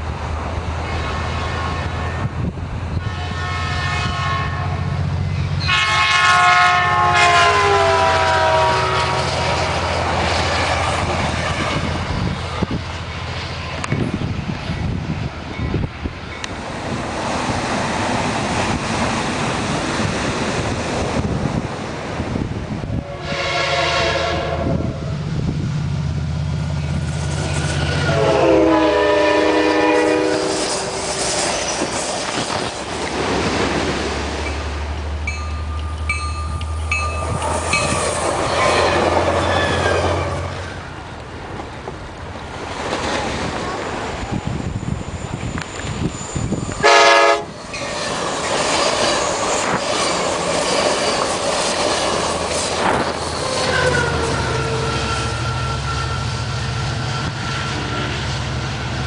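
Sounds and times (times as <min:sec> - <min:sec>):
train air horn: 0:02.9 - 0:04.9, 0:05.6 - 0:09.6, 0:23.0 - 0:25.2, 0:27.8 - 0:31.5, 0:46.8 - 0:47.9, 0:52.8 - 0:58.5.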